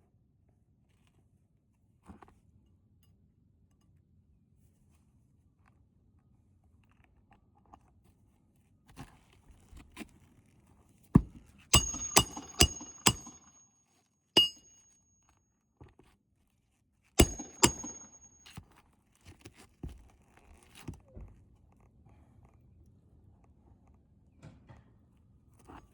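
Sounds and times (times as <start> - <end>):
hard objects knocking and clinking: 11.8 - 13.6, 14.4 - 14.8, 17.2 - 18.5.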